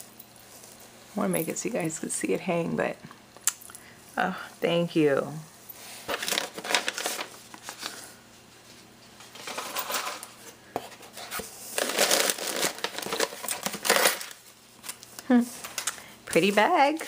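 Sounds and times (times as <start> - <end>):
packaging rustling and crinkling: 6.0 - 8.2, 9.3 - 16.9.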